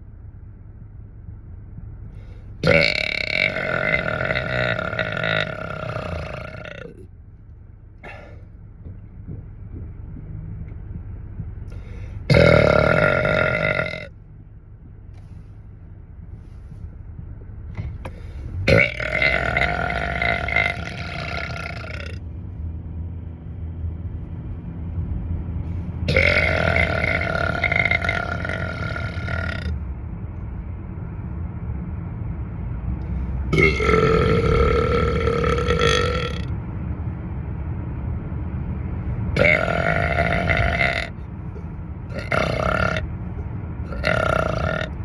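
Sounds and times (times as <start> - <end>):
low steady rumble: 0.0 - 45.0
man burping: 2.6 - 7.0, 12.3 - 14.1, 18.7 - 22.2, 26.1 - 29.7, 33.6 - 36.4, 39.4 - 41.2, 42.1 - 43.0, 43.9 - 45.0.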